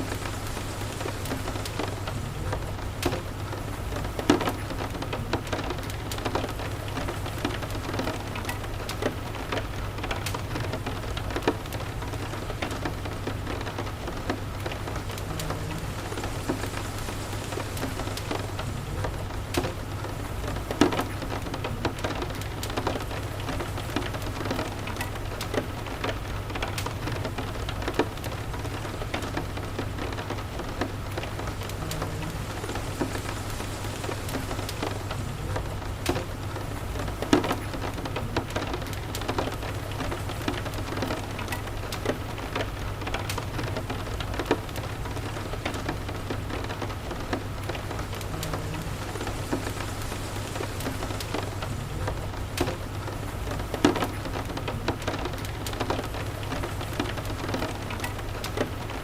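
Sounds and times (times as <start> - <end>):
fireplace crackling: 0.0 - 59.0
rain falling: 0.0 - 59.0
low steady rumble: 13.5 - 20.8, 29.9 - 37.3.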